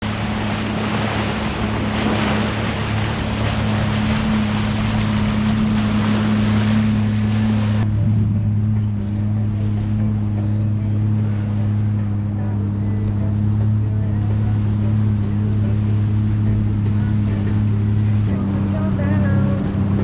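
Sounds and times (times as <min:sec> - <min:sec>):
water rushing: 0:00.0 - 0:07.9, 0:18.3 - 0:20.0
boat engine humming: 0:00.0 - 0:20.0.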